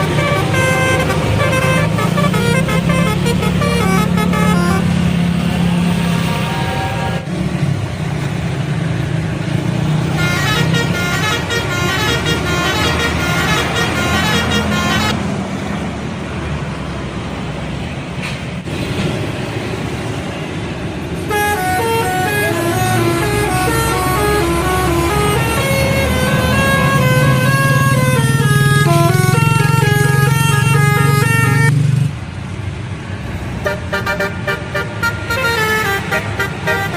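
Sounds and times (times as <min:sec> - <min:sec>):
bus horns playing melody: 0:00.0 - 0:07.4, 0:10.1 - 0:15.2, 0:21.2 - 0:31.8, 0:33.6 - 0:36.9
bus engine: 0:00.0 - 0:36.9
traffic: 0:00.0 - 0:36.9.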